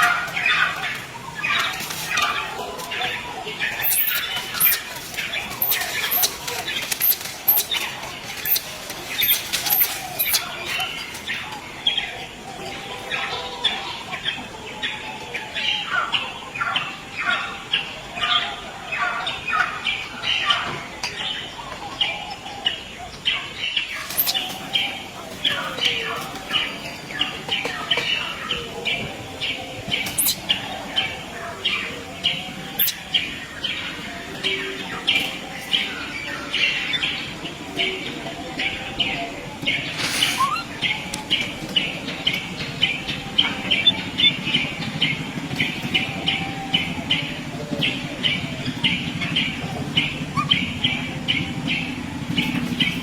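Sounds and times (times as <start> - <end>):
baby monkey squealing: 3.8 - 4.9, 5.6 - 7.7, 8.4 - 10.4, 24.1 - 24.5, 30.2 - 30.4, 32.7 - 33.0, 40.0 - 40.7.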